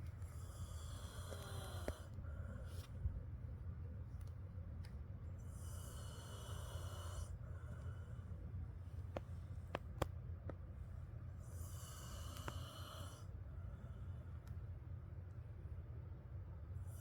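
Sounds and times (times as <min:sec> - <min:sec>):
pet snoring with whistle: 0:05.5 - 0:07.4, 0:11.5 - 0:13.3.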